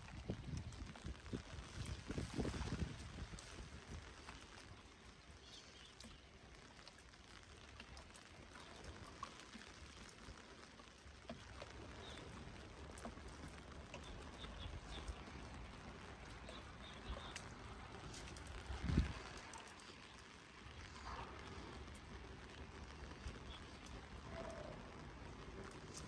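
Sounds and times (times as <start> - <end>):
wind rumble on microphone: 0.0 - 4.7, 11.7 - 19.7
heavy rain falling: 11.6 - 26.0.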